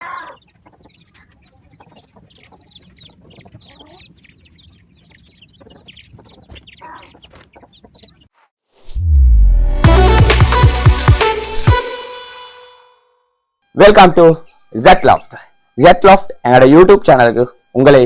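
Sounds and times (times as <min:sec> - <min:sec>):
chickens clucking: 0:00.0 - 0:08.4.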